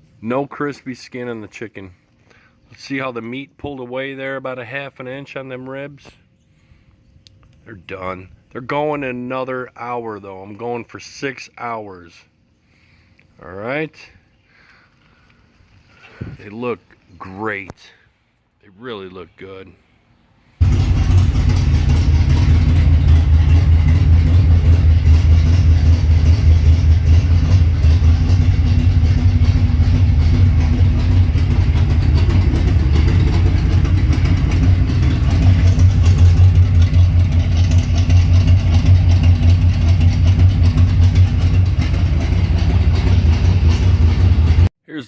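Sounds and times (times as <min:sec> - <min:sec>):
low engine rumble: 0:18.7 - 0:44.7.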